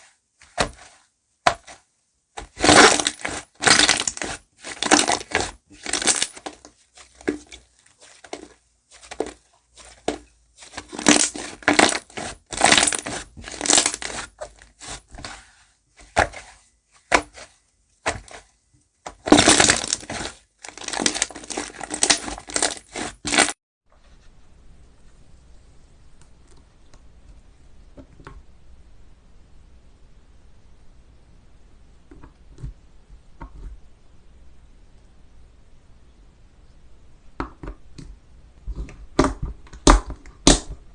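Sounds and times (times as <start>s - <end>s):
slime squeezed crackling: 2.4s - 15.4s, 19.2s - 23.5s.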